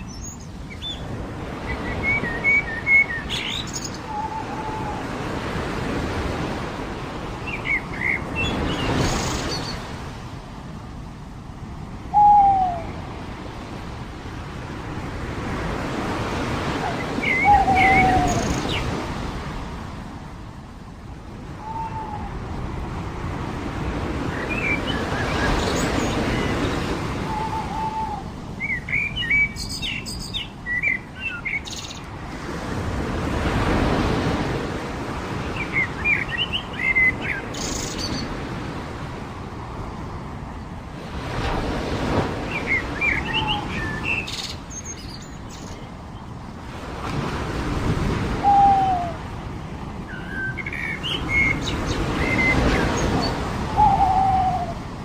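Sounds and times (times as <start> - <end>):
birds calling: 0.0 - 6.4, 7.3 - 9.9, 15.5 - 19.3, 24.2 - 32.1, 42.0 - 46.4, 48.2 - 49.3, 50.0 - 54.8
surf washing ashore: 0.0 - 55.0.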